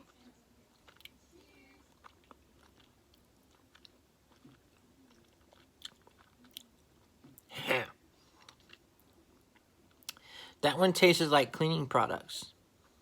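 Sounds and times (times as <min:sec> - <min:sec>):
chewing with sticky mouth clicks: 0:00.0 - 0:07.4, 0:08.4 - 0:10.2.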